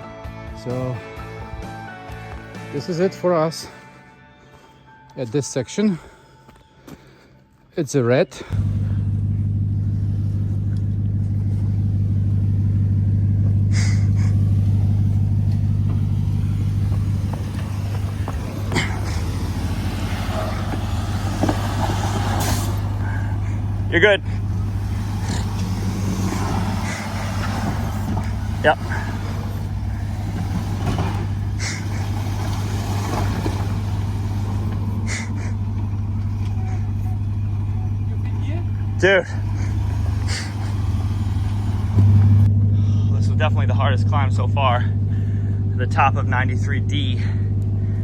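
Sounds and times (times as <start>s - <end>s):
truck engine rumbling: 8.2s - 48.0s
hissing scrapes: 13.6s - 36.9s.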